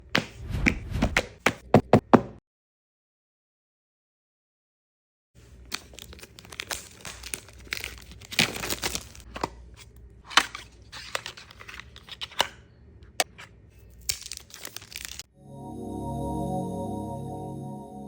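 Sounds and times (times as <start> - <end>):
plastic film tearing and crinkling: 5.7 - 9.3, 13.8 - 15.3.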